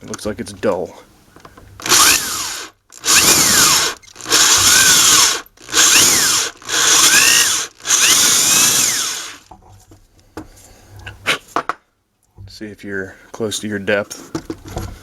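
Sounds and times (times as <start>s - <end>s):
power drill whining: 1.8s - 9.5s.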